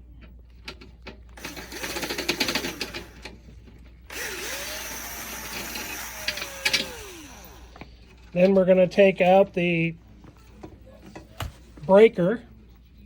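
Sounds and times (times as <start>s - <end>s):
power drill motor running: 1.4s - 3.3s, 4.1s - 7.9s
drill clicking: 1.4s - 3.4s, 4.1s - 7.8s.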